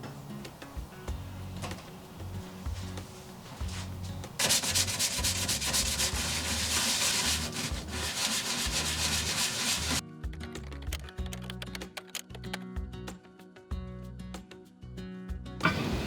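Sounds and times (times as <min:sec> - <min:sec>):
background music with bass: 0:00.0 - 0:16.0
sanding on metal: 0:02.8 - 0:10.0.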